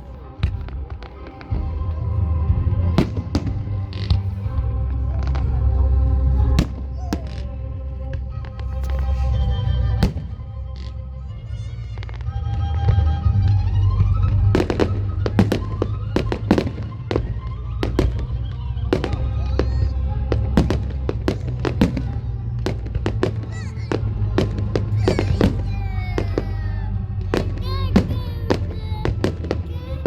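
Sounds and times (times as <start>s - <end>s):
music playing: 0.0s - 30.0s
low rumble: 0.9s - 30.0s
firework bangs: 14.1s - 30.0s.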